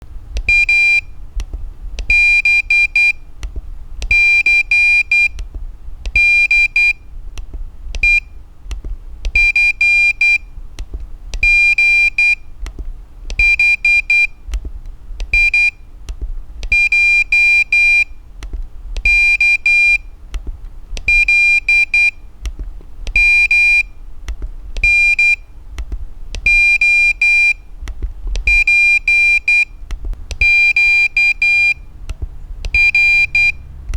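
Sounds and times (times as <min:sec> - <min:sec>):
high-pitched morse code beeps: 0:32.7 - 0:33.6.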